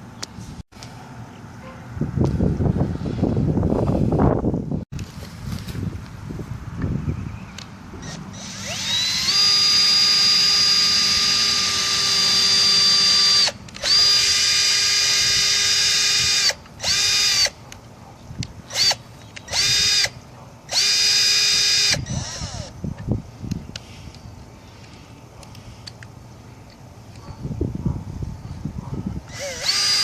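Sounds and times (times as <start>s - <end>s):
electric drill whining: 8.0s - 17.6s, 18.7s - 22.8s, 29.3s - 30.0s.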